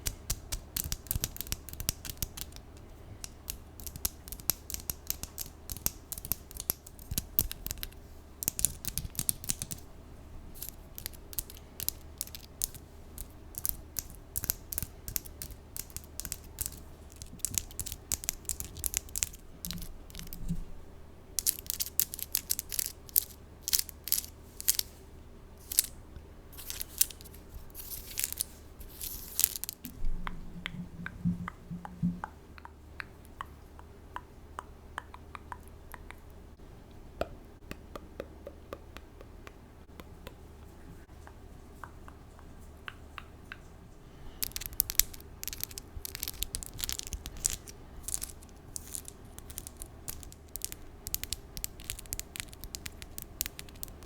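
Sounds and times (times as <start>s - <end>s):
nails scratching: 0.0s - 9.8s, 10.6s - 20.6s, 21.4s - 25.0s, 26.6s - 30.0s, 44.4s - 54.0s
nails tapping on microphone: 29.5s - 36.2s.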